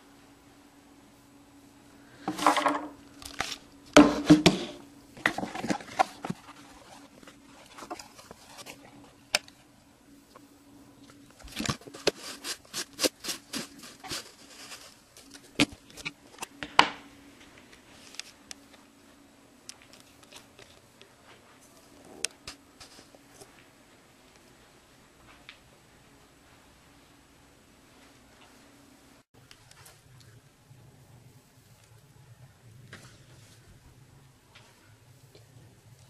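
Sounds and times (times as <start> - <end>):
faint steady hum: 0.0 - 36.0
packaging rustling and scraping: 2.2 - 9.6, 11.3 - 16.5.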